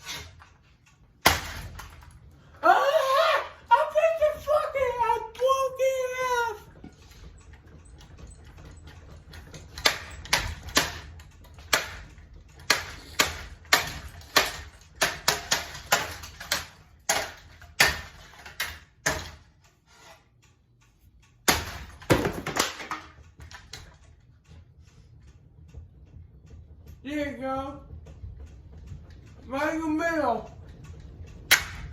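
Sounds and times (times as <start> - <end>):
hard objects knocking and clacking: 6.2 - 19.8, 21.3 - 31.9.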